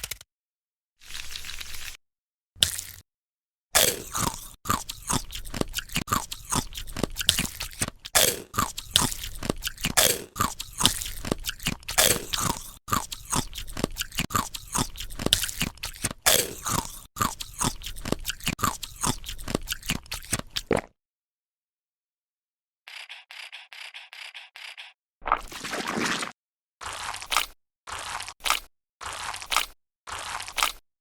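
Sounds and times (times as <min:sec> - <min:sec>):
crunching and chewing: 0:03.8 - 0:20.9, 0:26.8 - 0:30.8.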